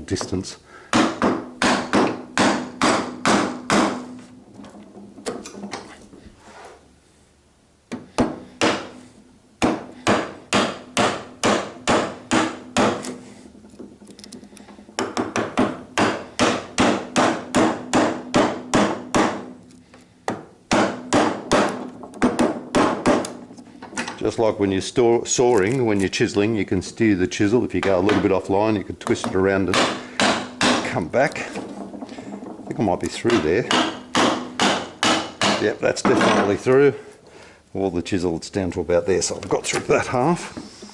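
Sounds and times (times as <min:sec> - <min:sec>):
mallet striking chisel in wood: 0:00.9 - 0:04.2, 0:09.6 - 0:13.2, 0:14.9 - 0:19.6, 0:20.2 - 0:23.5, 0:29.0 - 0:36.5.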